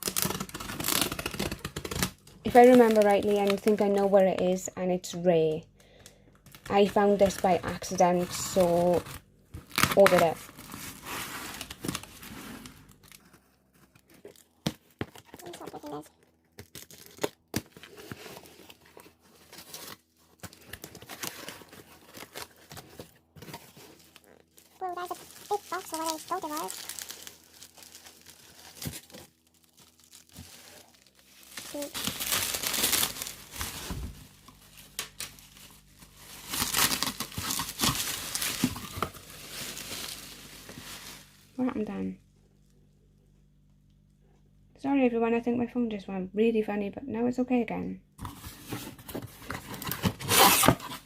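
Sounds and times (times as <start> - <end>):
packaging tearing: 0.0 - 3.8, 6.4 - 41.4, 48.2 - 51.0
packaging crackling and rustling: 0.0 - 4.6, 6.4 - 41.7, 48.2 - 51.0
crackles and clicks: 14.0 - 17.6, 24.0 - 33.7.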